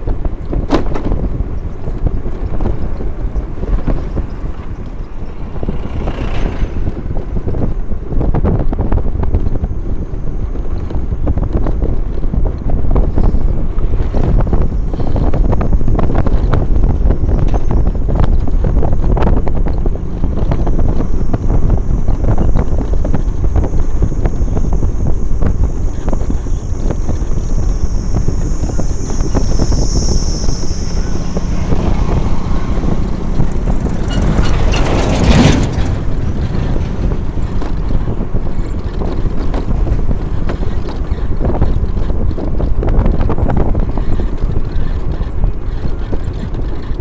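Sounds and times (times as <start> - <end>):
vehicle rumble: 0.0 - 47.0
wind buffeting microphone: 0.0 - 47.0
loud rushing sound: 2.6 - 8.2, 13.8 - 40.5.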